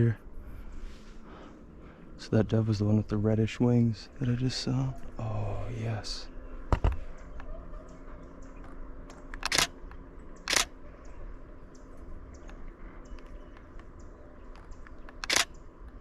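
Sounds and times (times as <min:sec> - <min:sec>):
camera shutter firing: 0:09.4 - 0:09.8, 0:10.5 - 0:10.7, 0:15.2 - 0:15.5.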